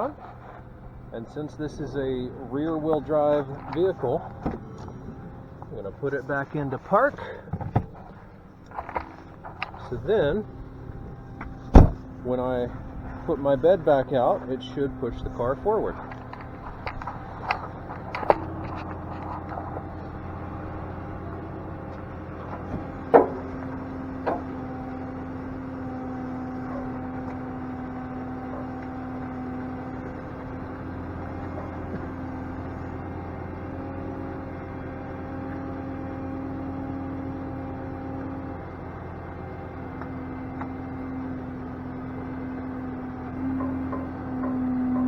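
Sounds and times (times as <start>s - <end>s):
truck engine and hydraulic pump whining: 0.0s - 45.0s
sharp metal clunks: 11.4s - 12.1s, 22.5s - 24.6s.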